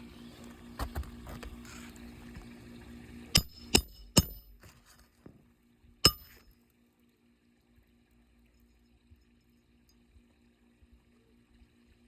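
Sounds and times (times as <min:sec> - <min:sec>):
hammer striking metal: 0:03.3 - 0:04.6, 0:06.1 - 0:06.4.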